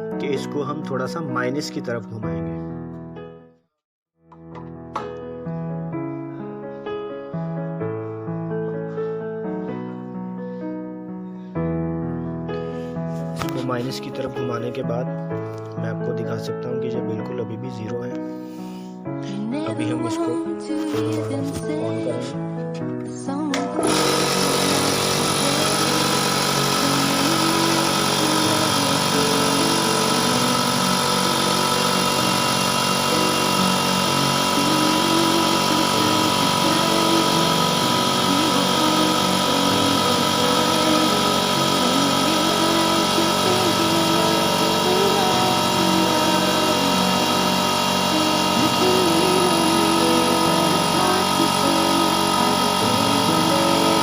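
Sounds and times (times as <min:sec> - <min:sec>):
air compressor running: 0:12.6 - 0:14.7, 0:23.6 - 0:54.0.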